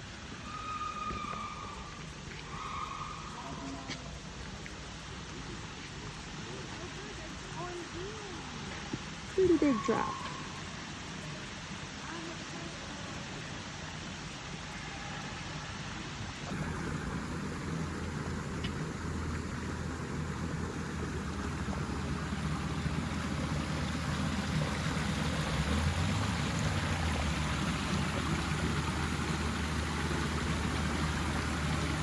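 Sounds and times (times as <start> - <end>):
low rumble: 16.5 - 32.0
waterfall rushing: 20.8 - 32.0.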